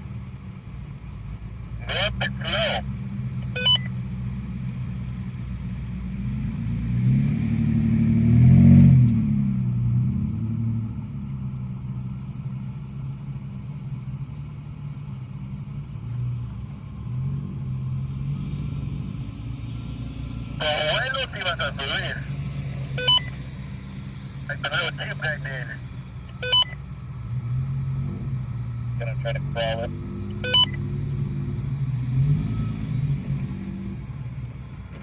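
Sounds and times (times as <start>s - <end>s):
engine running and revving: 0.0s - 35.0s.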